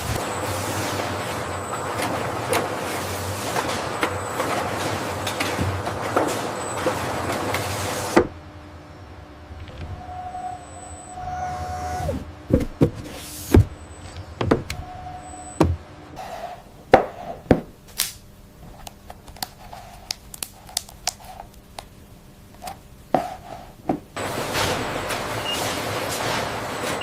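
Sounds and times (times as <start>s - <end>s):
faint steady hum: 0.0s - 27.0s
machinery knocks and clicks: 13.6s - 14.8s.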